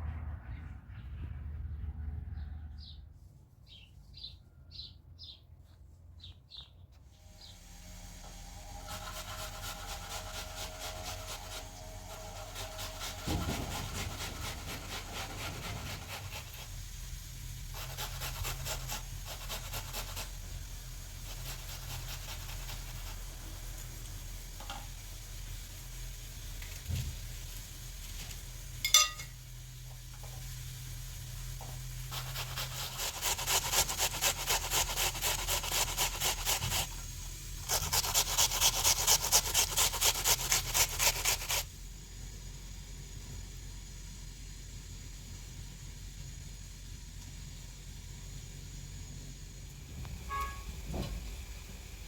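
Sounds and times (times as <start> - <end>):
rhythmic scraping strokes: 7.3 - 16.7
sharp clink: 28.8 - 29.4.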